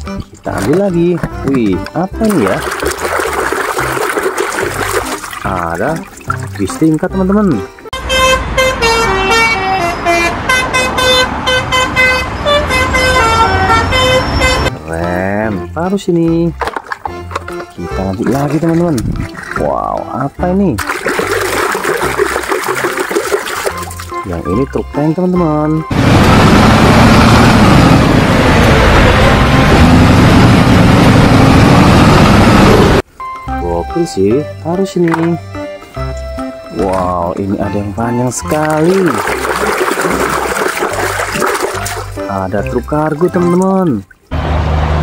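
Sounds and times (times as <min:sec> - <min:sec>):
multi-tone bus horn tune: 0:07.9 - 0:14.8
truck engine running: 0:25.9 - 0:33.0.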